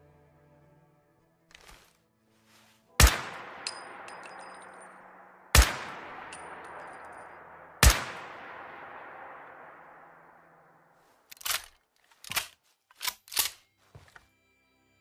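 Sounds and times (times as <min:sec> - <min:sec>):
rifle shots with echo: 0:03.0 - 0:11.6
light metallic clinks: 0:03.5 - 0:05.2, 0:05.8 - 0:07.6.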